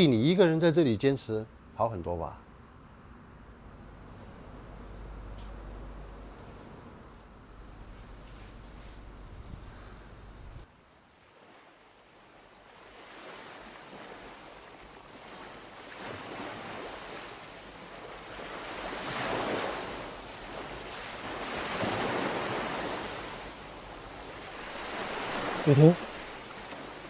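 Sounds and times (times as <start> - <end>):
ocean surf breaking on beach: 12.9 - 27.0.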